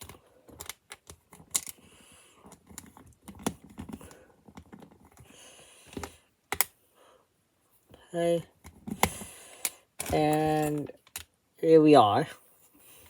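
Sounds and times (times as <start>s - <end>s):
plastic bricks clicking together: 0.0s - 1.8s, 9.0s - 11.3s.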